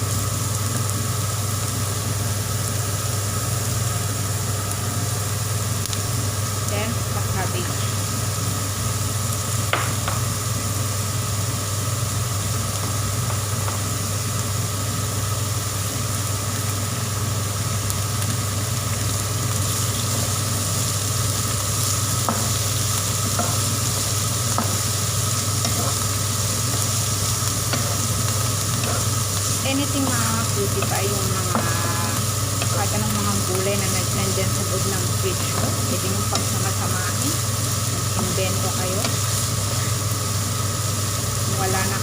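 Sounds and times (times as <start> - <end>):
steady low hum: 0.0 - 42.0
vegetables sizzling in hot oil: 0.0 - 42.0.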